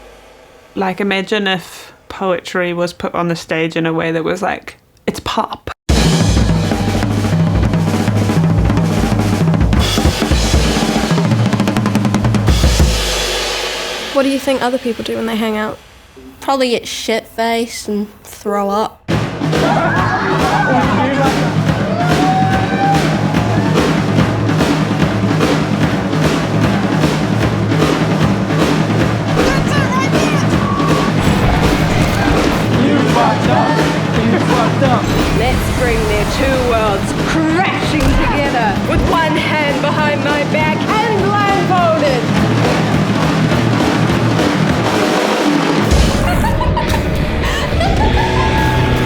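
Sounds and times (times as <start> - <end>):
drum kit beat: 5.9 - 16.7, 19.1 - 49.0
bass line: 19.6 - 44.4, 45.8 - 49.0.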